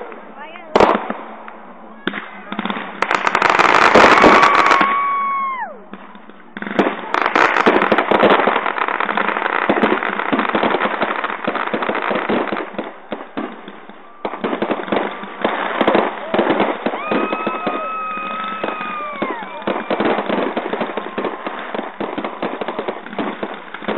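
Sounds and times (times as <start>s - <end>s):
fireworks crackling pops: 0.0s - 23.9s
firework whistle: 3.1s - 5.8s, 15.8s - 22.8s.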